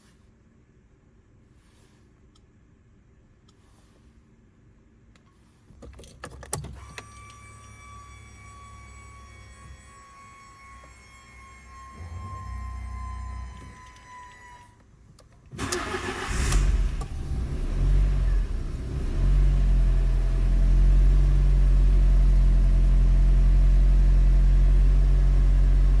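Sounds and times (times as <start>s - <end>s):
car engine revving and idling: 11.8s - 13.6s, 15.6s - 26.0s
engine starter cranking: 15.5s - 18.2s.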